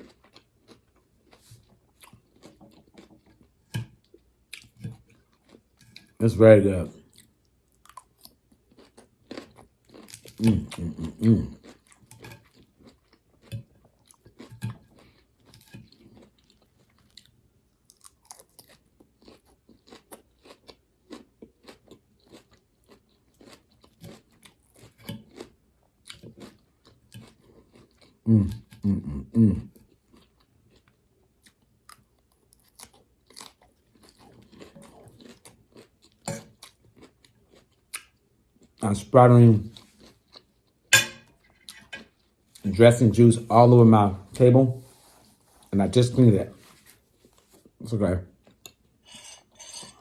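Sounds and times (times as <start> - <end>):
crunchy vegetables being chewed: 0.0 - 6.2, 6.9 - 43.7.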